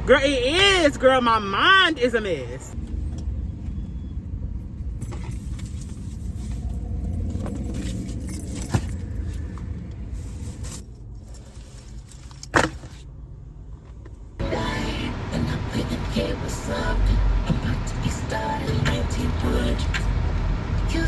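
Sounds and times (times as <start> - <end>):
car rumbling: 0.0 - 21.0
keys jangling: 4.8 - 9.5.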